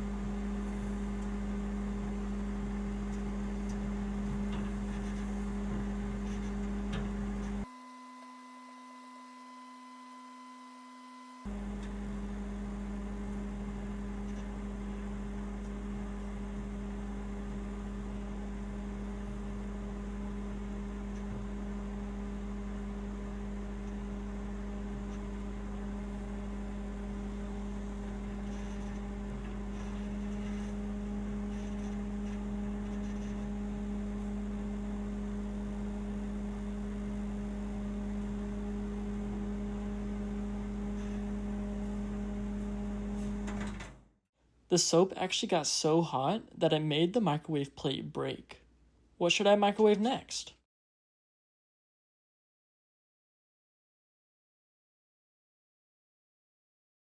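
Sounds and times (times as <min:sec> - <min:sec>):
microwave oven humming: 0:00.0 - 0:44.1.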